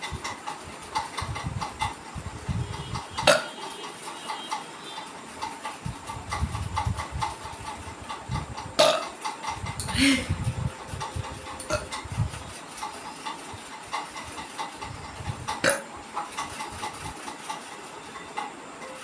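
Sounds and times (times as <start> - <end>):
woman burping: 9.9 - 10.4.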